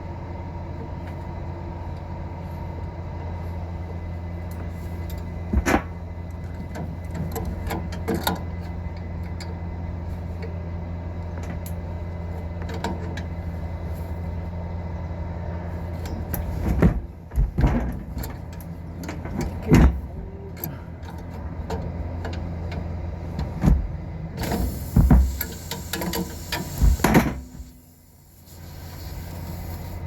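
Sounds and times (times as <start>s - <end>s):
machinery hum: 0.0s - 30.0s
knocks and clunks: 5.5s - 8.5s, 16.0s - 27.8s.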